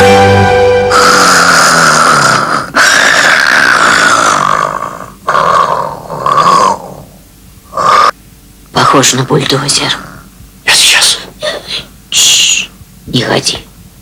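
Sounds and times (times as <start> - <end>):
person snoring loudly: 0.9 - 8.2.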